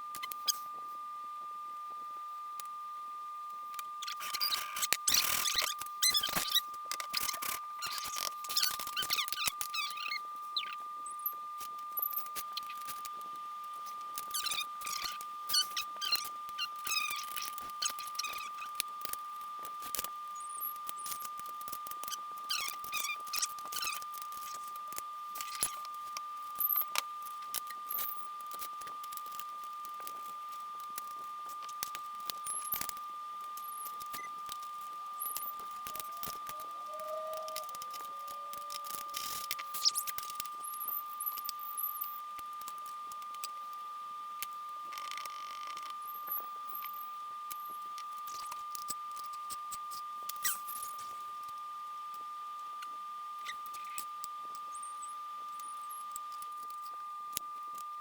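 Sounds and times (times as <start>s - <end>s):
high-pitched whine: 4.2s - 13.0s, 20.2s - 21.3s, 31.6s - 42.3s, 53.4s - 56.2s
steady high-pitched tone: 35.1s - 42.2s.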